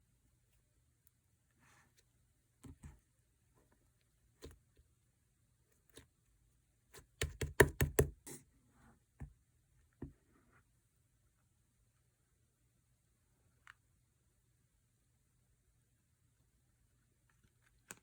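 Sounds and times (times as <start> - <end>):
sharp taps and clicks: 7.2 - 8.1.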